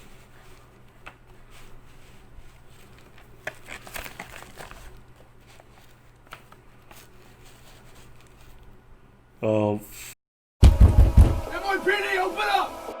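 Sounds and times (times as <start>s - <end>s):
packaging crinkling: 1.4s - 8.7s.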